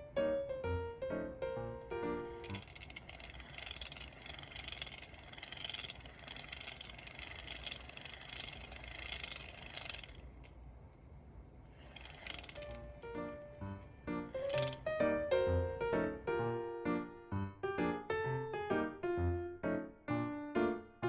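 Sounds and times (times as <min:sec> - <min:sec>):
fishing reel grinding whir: 0:02.0 - 0:16.2.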